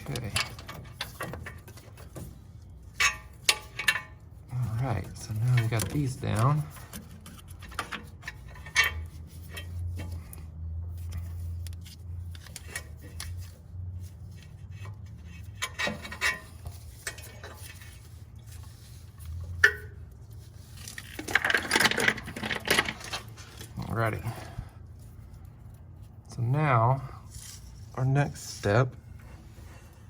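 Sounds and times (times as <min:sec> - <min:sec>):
metal tools clinking and rattling: 0:00.0 - 0:02.3, 0:02.9 - 0:10.2, 0:15.4 - 0:18.0, 0:20.8 - 0:24.4
rustling and clatter: 0:00.0 - 0:26.4.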